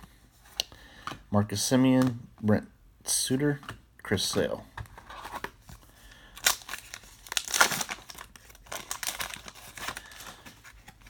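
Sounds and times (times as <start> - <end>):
wrapper crinkling and tearing: 6.4 - 11.0.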